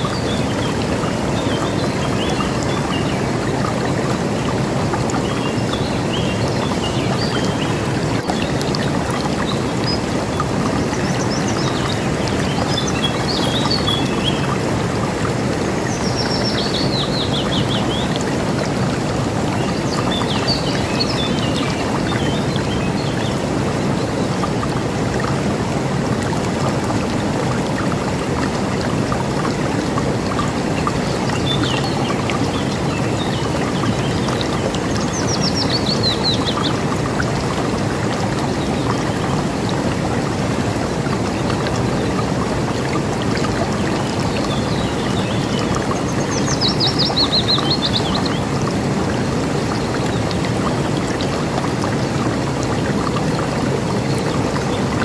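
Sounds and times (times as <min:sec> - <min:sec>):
river water rushing: 0:00.0 - 0:55.0
birds singing: 0:05.1 - 0:14.6, 0:15.8 - 0:18.4, 0:19.4 - 0:23.4, 0:30.9 - 0:36.9, 0:44.1 - 0:48.5.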